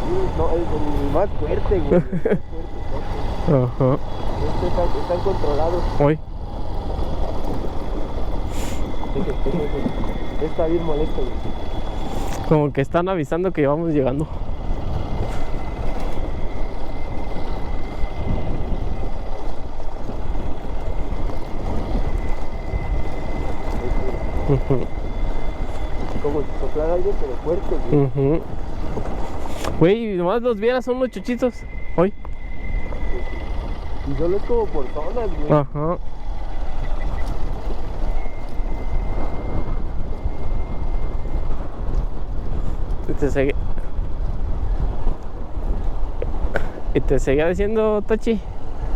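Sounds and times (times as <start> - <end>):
dirt bike engine: 0.0 - 48.9
motorcycle running: 0.0 - 48.9
wind rumble on microphone: 0.0 - 48.9
high-pitched insect shrill: 29.4 - 41.4.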